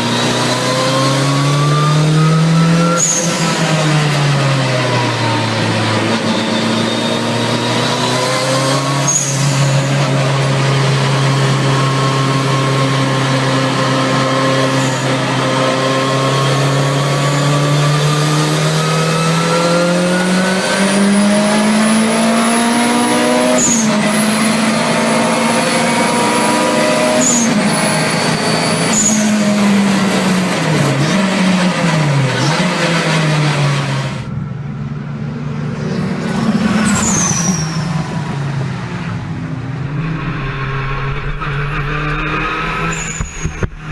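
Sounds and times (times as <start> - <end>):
faint high whistle: 36.9 - 38.2.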